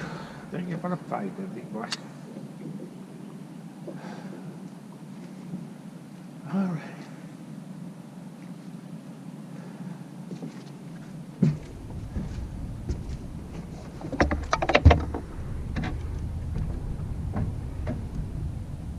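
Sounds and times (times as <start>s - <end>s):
gear knocking and clattering: 11.4s - 18.5s
low rumble: 11.5s - 18.9s.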